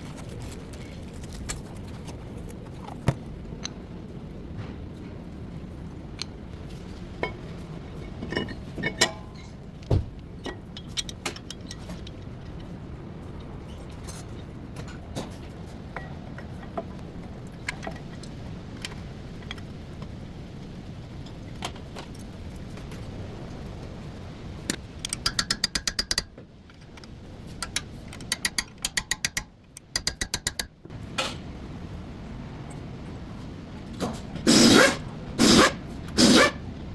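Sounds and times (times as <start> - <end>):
metal tools clinking: 8.0 - 9.6
ratchet wrench clicking: 25.1 - 26.3, 27.6 - 30.7.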